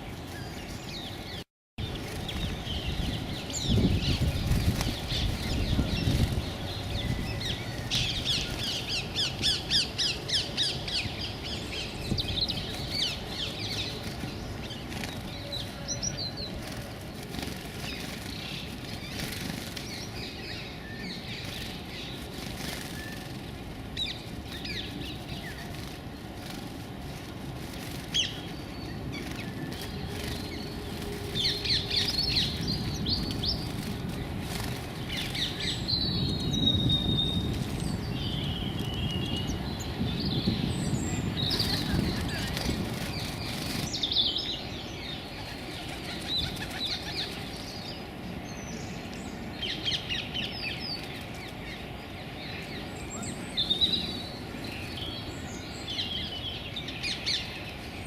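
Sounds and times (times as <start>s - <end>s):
birds chirping: 0.0s - 58.0s
wing flutters: 1.2s - 9.9s, 12.1s - 36.0s, 36.8s - 39.3s, 41.0s - 44.3s, 45.3s - 47.8s.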